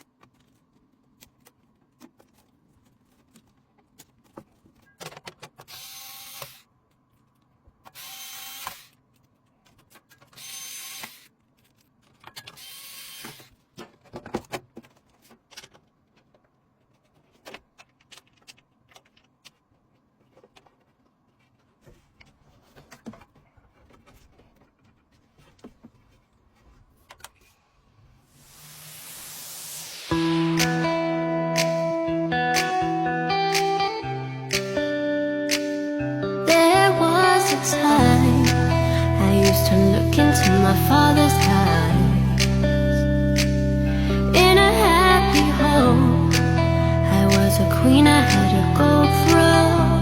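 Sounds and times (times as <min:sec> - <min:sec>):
electric screwdriver whirring: 0:05.7 - 0:06.7, 0:07.9 - 0:09.0, 0:10.4 - 0:11.3, 0:12.6 - 0:13.5.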